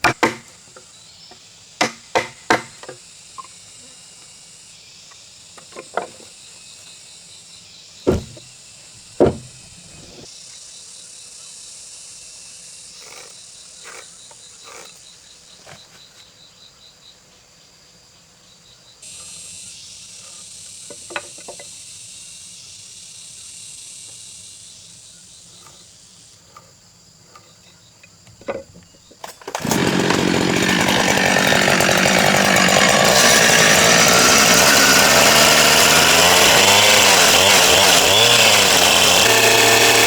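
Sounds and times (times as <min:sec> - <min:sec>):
sharp knocks: 0:08.1 - 0:10.2.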